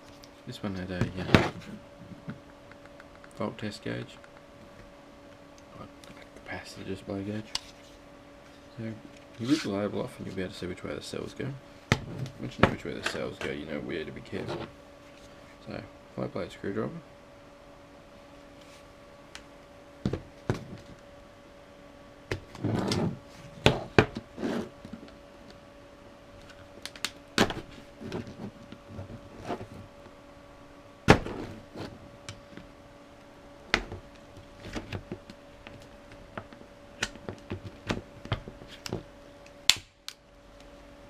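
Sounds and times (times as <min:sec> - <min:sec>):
sharp clicks and cracks: 0:26.4 - 0:27.2.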